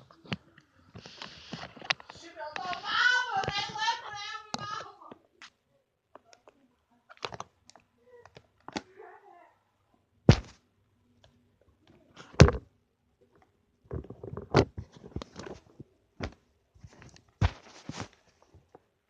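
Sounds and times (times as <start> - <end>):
sharp thumps and knocks: 10.3 - 10.6, 12.3 - 12.7, 17.4 - 18.1.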